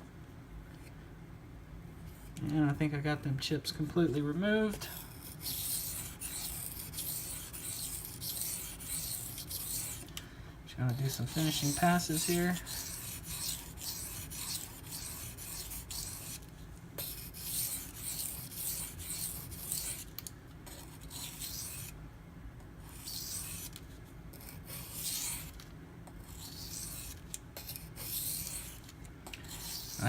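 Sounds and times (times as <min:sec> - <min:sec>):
knife scraping on waterstone: 0:26.2 - 0:28.8, 0:29.4 - 0:30.0.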